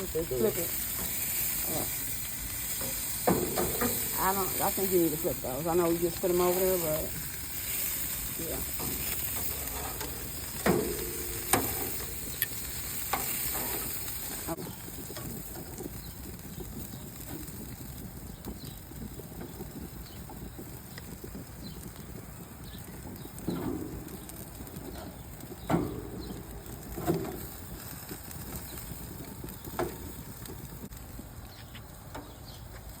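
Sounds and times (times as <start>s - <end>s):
food clicking on grill: 0.0s - 32.9s
meat sizzling on grill: 0.0s - 33.0s.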